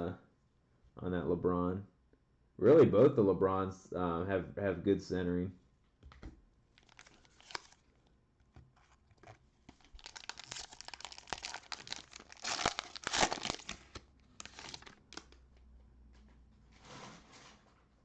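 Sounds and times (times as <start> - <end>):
cellophane crackling: 6.8 - 7.9, 8.8 - 15.4.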